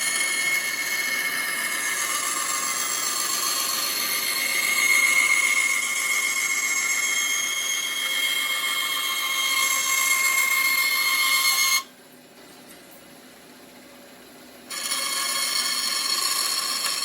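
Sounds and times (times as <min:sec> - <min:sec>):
welding arc buzzing whine: 0:14.7 - 0:17.0.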